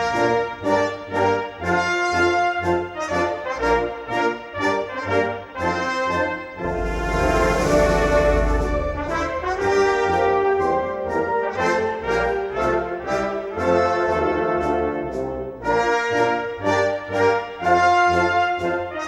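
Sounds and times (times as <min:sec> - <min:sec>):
brass band playing: 0:00.0 - 0:19.0
low drum pulse: 0:06.6 - 0:10.6
cymbal crash: 0:06.6 - 0:10.9.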